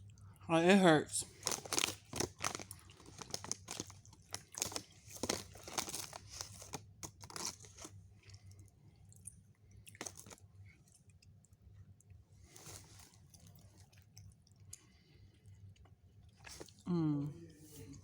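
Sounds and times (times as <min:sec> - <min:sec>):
chewing with wet mouth clicks: 0:01.3 - 0:16.9.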